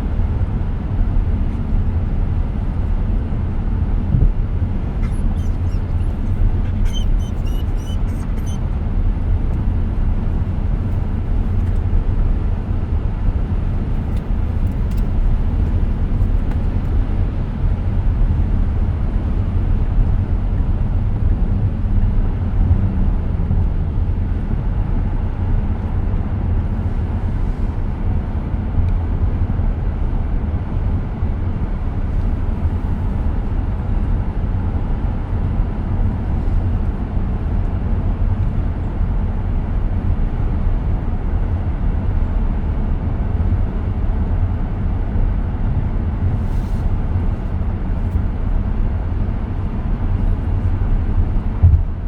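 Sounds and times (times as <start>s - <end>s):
road and tyre noise: 0.0s - 52.0s
faint high chirps: 5.0s - 8.6s.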